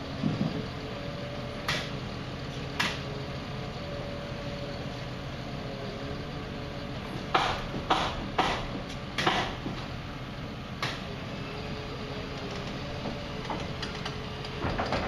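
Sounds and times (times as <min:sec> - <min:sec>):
steady machine hum: 0:00.0 - 0:15.0
pile driver hammer blows: 0:07.3 - 0:09.8.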